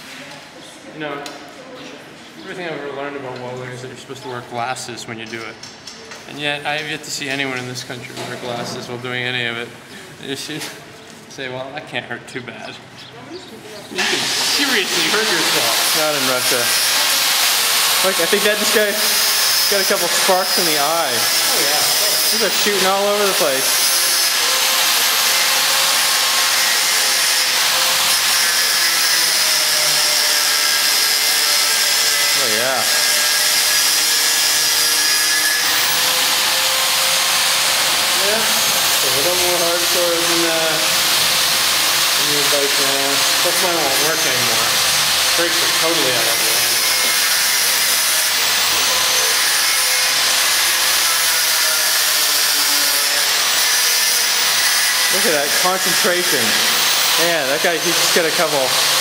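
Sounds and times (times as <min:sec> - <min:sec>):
welding hiss: 0:14.0 - 0:59.0.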